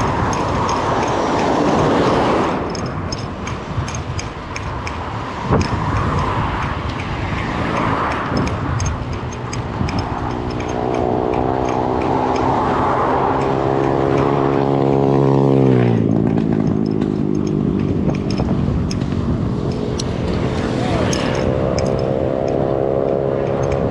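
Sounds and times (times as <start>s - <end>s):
road noise: 0.0s - 23.9s
vehicle engine passing by: 5.1s - 23.9s.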